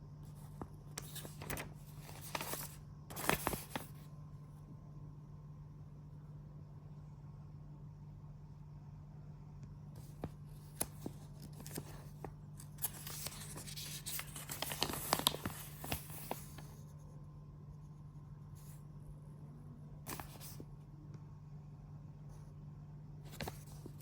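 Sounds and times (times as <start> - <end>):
steady low hum: 0.0 - 24.0
packaging rustling: 10.8 - 16.7.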